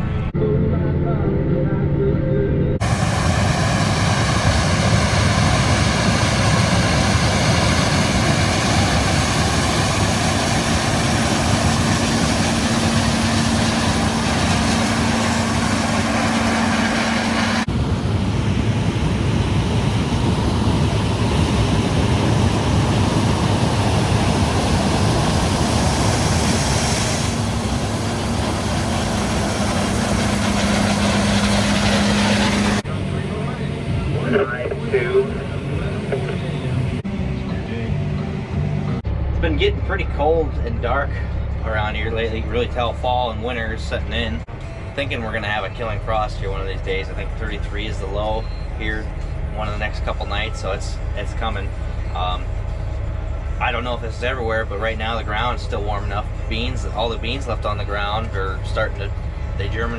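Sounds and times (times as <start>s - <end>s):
steady whine: 0.0s - 59.9s
tractor diesel engine running: 2.8s - 59.9s.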